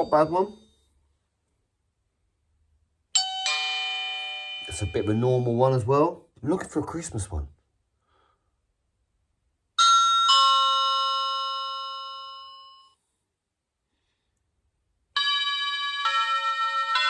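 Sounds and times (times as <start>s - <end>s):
electronic doorbell ding-dong: 0.0s - 0.7s, 3.2s - 5.2s, 9.8s - 13.0s, 15.2s - 17.0s
multi-note doorbell chime tune: 0.0s - 0.8s, 3.1s - 5.7s, 9.8s - 13.0s, 15.2s - 17.0s.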